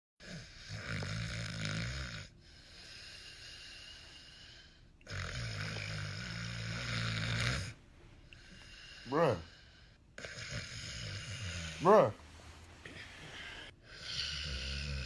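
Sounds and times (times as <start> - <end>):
person snoring loudly: 0.2 - 2.3, 5.1 - 7.8, 10.2 - 12.1, 12.9 - 15.0
quiet breath: 2.2 - 5.1, 7.7 - 10.2, 11.0 - 15.0.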